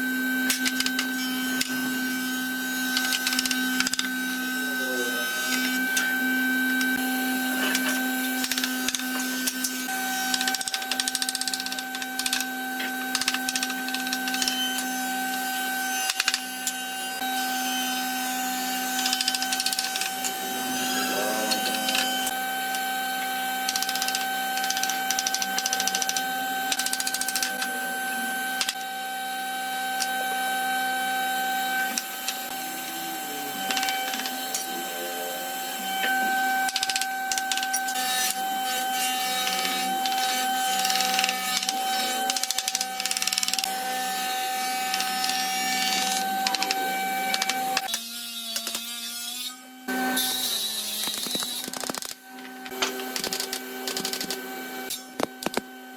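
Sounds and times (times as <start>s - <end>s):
power tool motor humming: 0.0s - 55.7s.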